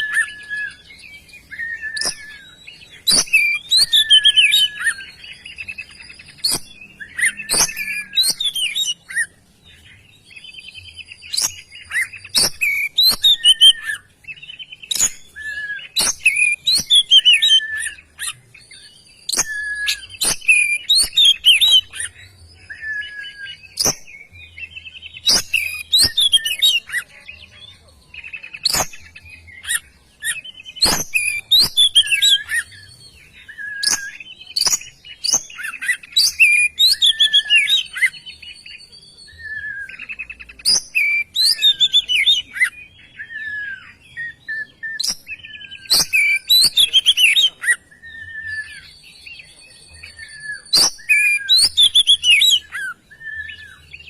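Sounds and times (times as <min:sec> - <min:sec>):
songbird singing: 0:00.0 - 0:54.0
sharp bird clicks: 0:14.8 - 0:15.2, 0:28.6 - 0:29.2, 0:30.7 - 0:32.6.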